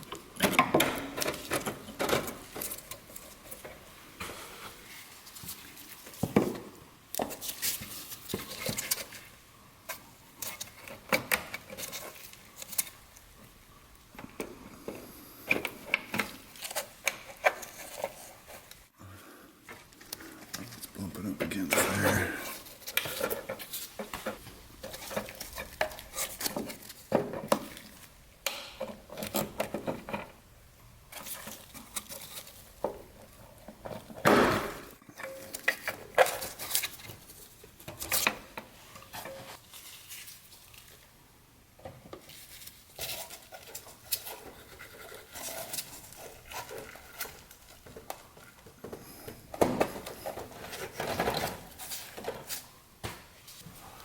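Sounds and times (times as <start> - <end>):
hand tools clinking and scraping metal: 20.1 - 30.3.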